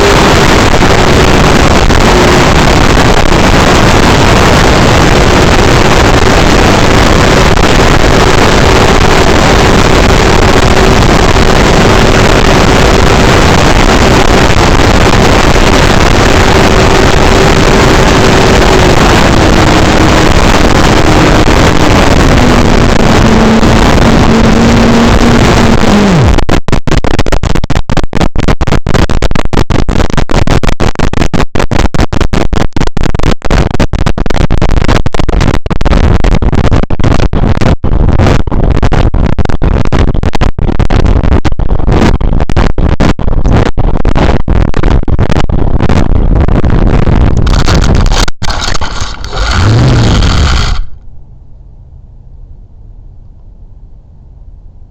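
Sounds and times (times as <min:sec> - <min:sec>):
wind noise on microphone: 0:00.0 - 0:54.9
electric motor and propeller whining: 0:48.5 - 0:51.0.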